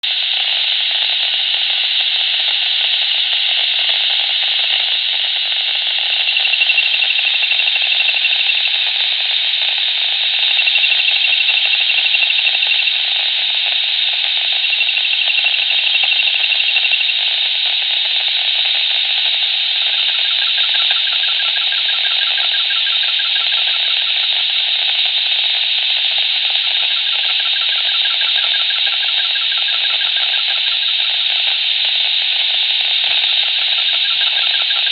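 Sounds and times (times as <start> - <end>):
walkie-talkie static hiss: 0.0 - 34.9
fast-warbling high tone: 6.2 - 8.7.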